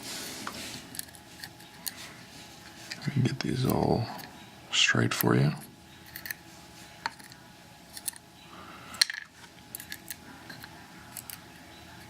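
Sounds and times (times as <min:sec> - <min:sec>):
small metal parts clicking: 0:07.0 - 0:08.2, 0:09.0 - 0:11.4.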